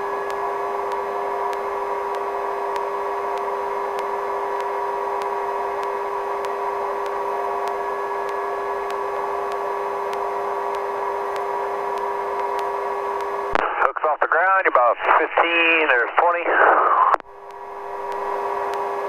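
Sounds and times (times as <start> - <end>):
helicopter turbine and rotor drone: 0.0 - 13.5.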